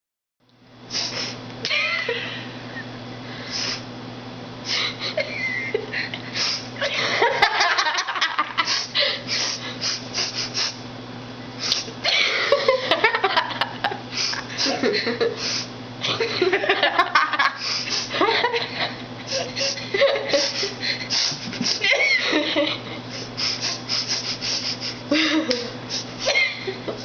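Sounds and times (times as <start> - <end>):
low electrical hum: 0.4 - 27.0
person giggling: 1.6 - 3.0, 4.7 - 9.3, 12.0 - 27.0
breathy sniffs and snorts: 8.6 - 10.8, 19.3 - 21.8, 23.1 - 25.0.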